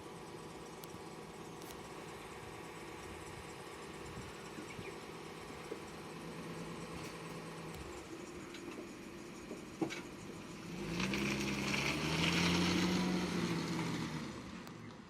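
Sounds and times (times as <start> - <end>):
car driving past: 10.6 - 14.9.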